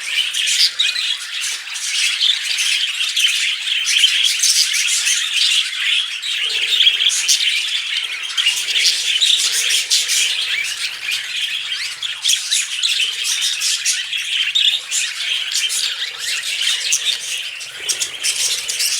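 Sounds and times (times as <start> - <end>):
budgerigars chattering and warbling: 0.0 - 18.9.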